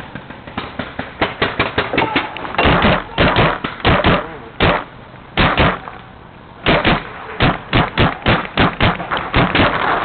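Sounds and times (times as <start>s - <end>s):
paintball marker shots: 2.6s - 6.0s, 6.6s - 9.9s.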